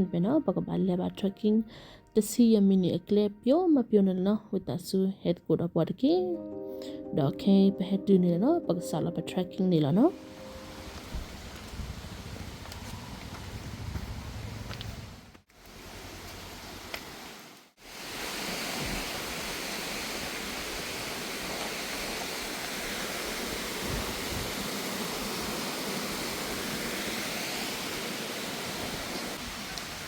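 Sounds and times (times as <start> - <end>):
waterfall rushing: 17.8 - 30.0.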